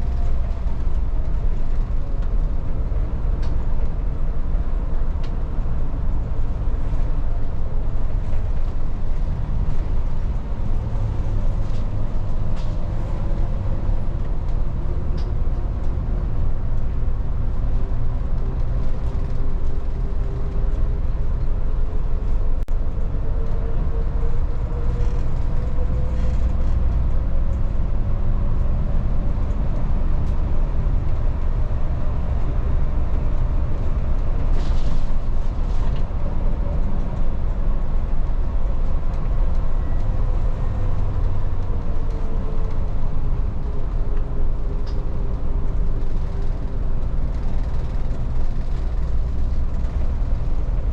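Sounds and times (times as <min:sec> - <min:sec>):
bus engine and road rumble: 0:00.0 - 0:50.9
light rattles and clicks: 0:28.4 - 0:50.9.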